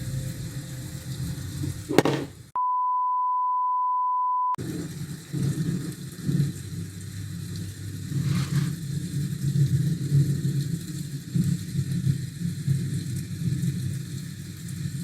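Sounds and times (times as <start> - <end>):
city traffic rumble: 0.0 - 2.6
sharp knock: 1.9 - 2.4
steady beep: 2.6 - 4.6.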